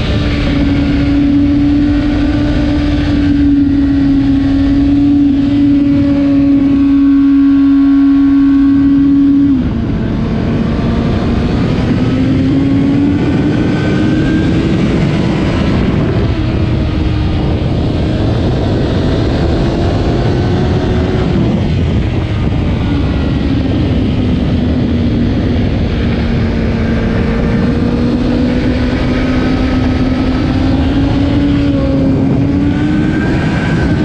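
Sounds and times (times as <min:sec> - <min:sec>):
motorcycle engine at high revs: 0:00.0 - 0:34.0
wind rush: 0:00.0 - 0:34.0.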